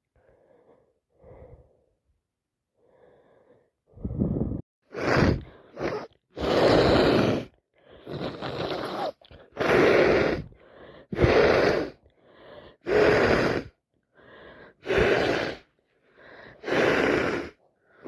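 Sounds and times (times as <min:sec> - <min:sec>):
woman breathing softly: 0:00.0 - 0:02.1, 0:02.8 - 0:04.6, 0:10.4 - 0:11.1, 0:12.0 - 0:12.9, 0:14.0 - 0:14.9, 0:15.6 - 0:16.6
harsh sniffs through blocked nose: 0:04.9 - 0:10.4, 0:11.2 - 0:12.0, 0:14.8 - 0:15.7, 0:16.5 - 0:17.6.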